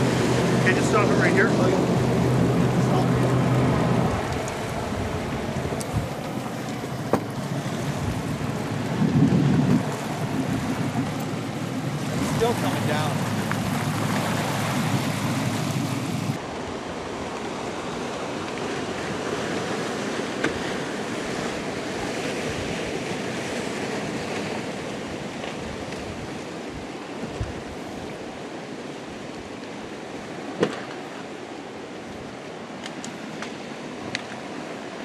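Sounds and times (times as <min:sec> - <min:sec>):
low hum: 0:00.0 - 0:16.4
wind on microphone: 0:00.0 - 0:19.6, 0:20.6 - 0:28.4
rushing water and waves: 0:00.0 - 0:35.0.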